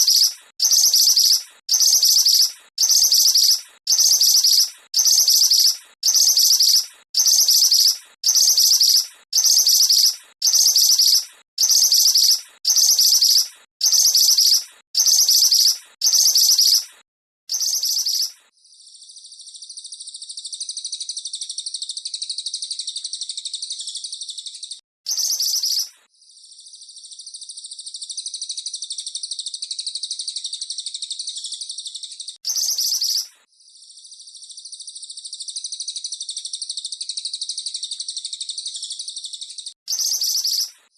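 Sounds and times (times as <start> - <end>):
bird high trills: 0.0 - 16.8.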